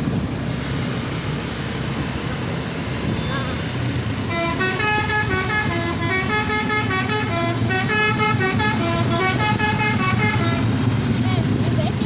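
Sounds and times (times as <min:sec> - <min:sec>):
musical horn playing a tune: 0:04.3 - 0:10.8.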